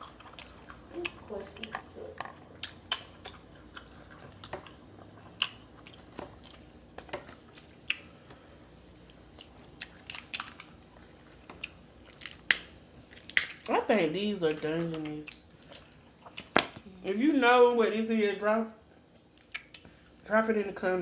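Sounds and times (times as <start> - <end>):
chewing and biting seafood: 0.0 - 8.1.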